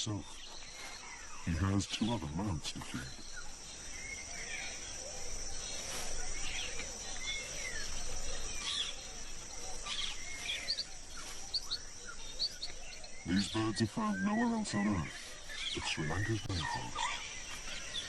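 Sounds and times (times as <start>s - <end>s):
bird chirps and whistled calls: 0.0s - 18.0s
high insect drone: 0.0s - 18.0s.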